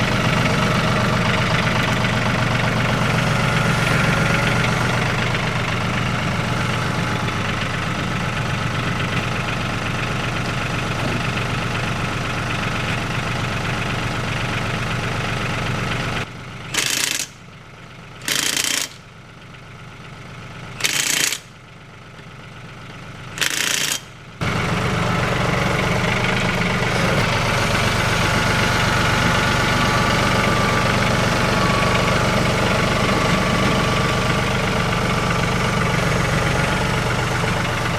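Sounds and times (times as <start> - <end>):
diesel engine idling: 0.0 - 37.9
impact wrench bursts: 7.2 - 14.5, 16.7 - 17.4, 18.2 - 19.0, 20.8 - 21.5, 23.4 - 24.1.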